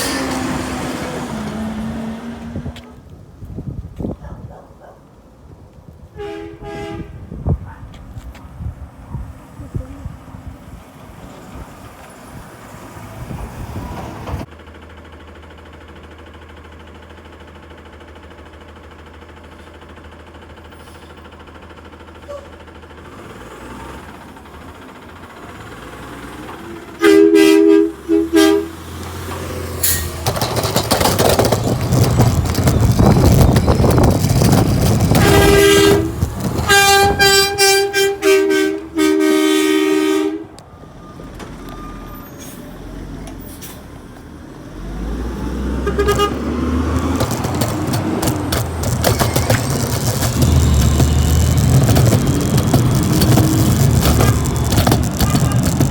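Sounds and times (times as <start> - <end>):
truck engine running: 0.0 - 4.6, 8.6 - 55.9
truck horn two-tone honks: 6.2 - 7.4, 27.0 - 29.0, 35.1 - 40.6, 45.7 - 46.8.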